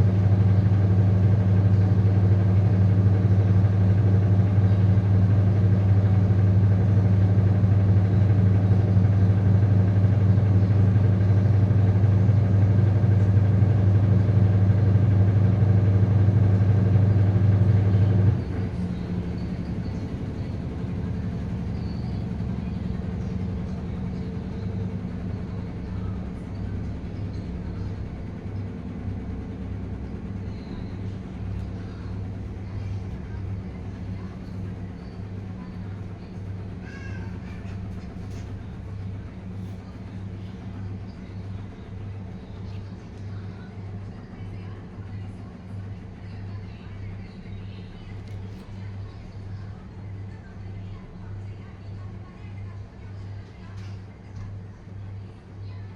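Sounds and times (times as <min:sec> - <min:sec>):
pulsing rumble: 0:00.0 - 0:43.1
washing machine humming: 0:00.0 - 0:55.9.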